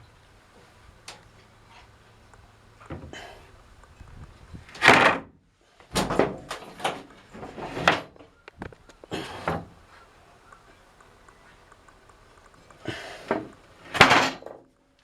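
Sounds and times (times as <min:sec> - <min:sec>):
scraping or sliding noises: 0:06.5 - 0:08.2, 0:09.0 - 0:10.0.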